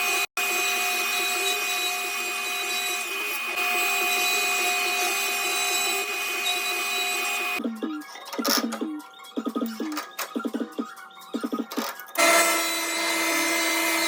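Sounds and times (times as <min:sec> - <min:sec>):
power tool cutting wood: 0:00.0 - 0:07.6, 0:12.2 - 0:14.0
background music: 0:07.6 - 0:14.0.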